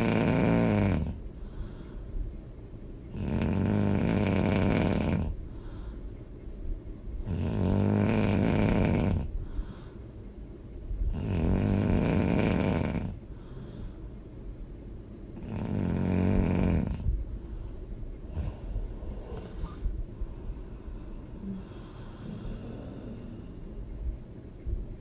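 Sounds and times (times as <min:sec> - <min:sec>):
woman snoring loudly: 0:00.0 - 0:01.2, 0:03.1 - 0:05.3, 0:07.3 - 0:09.3, 0:11.1 - 0:13.2, 0:15.4 - 0:17.0
quiet breathing: 0:00.0 - 0:25.0.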